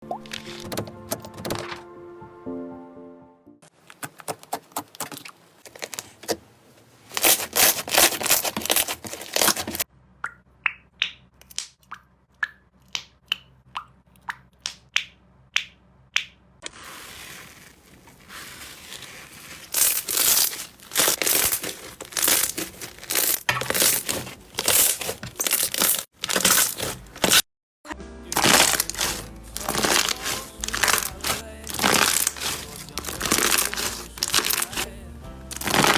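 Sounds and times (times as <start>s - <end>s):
slime crackling and popping: 7.2s - 9.8s, 16.6s - 27.4s, 28.3s - 34.9s, 35.5s - 35.9s.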